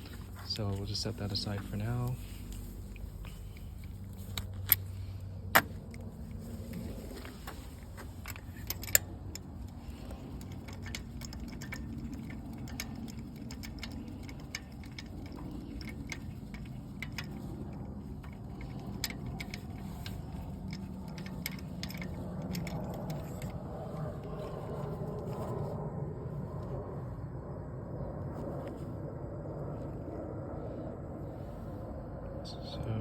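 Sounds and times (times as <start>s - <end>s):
low background hum: 0.0s - 33.0s
metallic clicks of hand tools: 7.5s - 24.5s.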